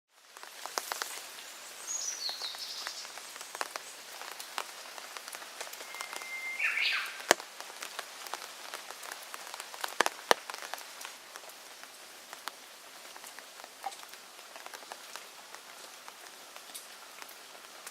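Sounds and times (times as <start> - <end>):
steady rain: 0.1 - 17.9
bird calls: 5.8 - 7.3.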